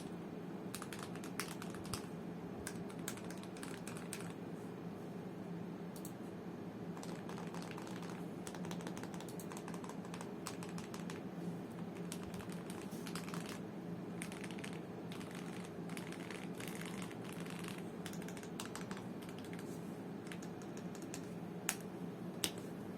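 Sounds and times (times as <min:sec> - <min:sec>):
mechanical keyboard typing: 0:00.7 - 0:02.1, 0:02.7 - 0:04.4, 0:07.0 - 0:11.2, 0:11.8 - 0:13.6, 0:14.2 - 0:21.8.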